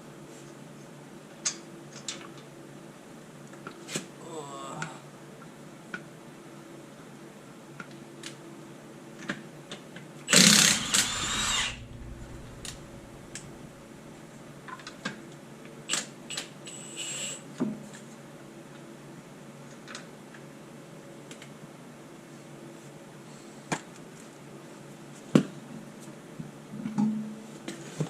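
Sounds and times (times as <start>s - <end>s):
power tool burst: 10.3s - 14.5s.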